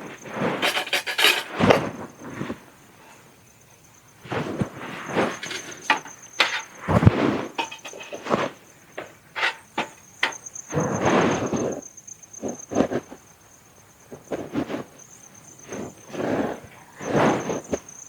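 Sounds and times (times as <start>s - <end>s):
handling knocks and clatters: 0.0s - 1.9s, 5.1s - 10.9s
high insect trill: 0.0s - 14.1s, 17.0s - 18.0s
rustling handling noise: 0.6s - 1.9s, 5.1s - 8.5s, 9.3s - 10.6s.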